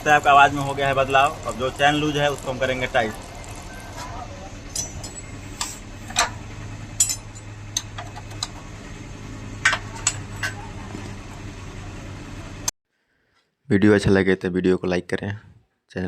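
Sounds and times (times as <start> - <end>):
metal tools clinking: 4.7 - 6.3, 7.0 - 8.6.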